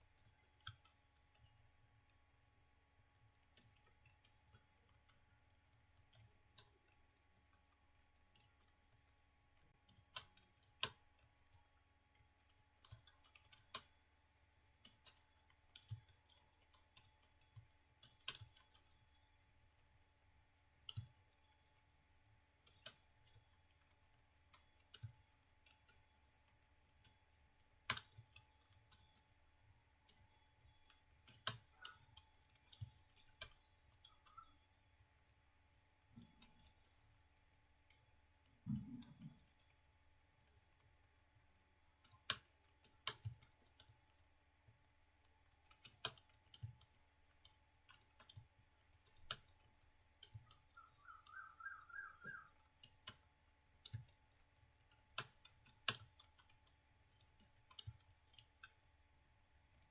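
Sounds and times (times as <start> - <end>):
faint steady hum: 0.0 - 59.9
keyboard keys clicking: 45.2 - 58.8.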